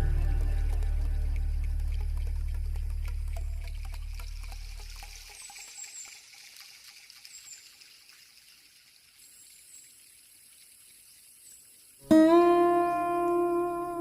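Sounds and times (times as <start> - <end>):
music track: 0.0 - 3.9, 12.1 - 14.0
faint trickling water: 0.0 - 14.0.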